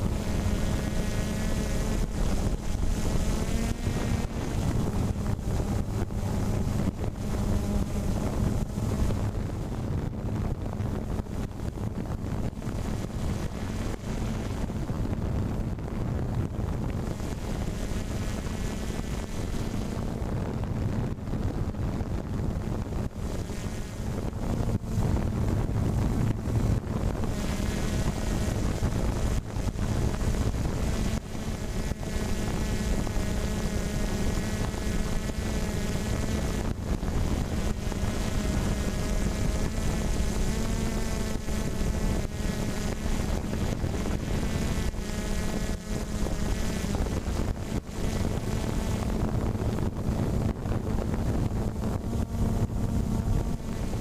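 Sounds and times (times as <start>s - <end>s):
motor hum with whine: 0.0s - 54.0s
wind buffeting microphone: 0.0s - 54.0s.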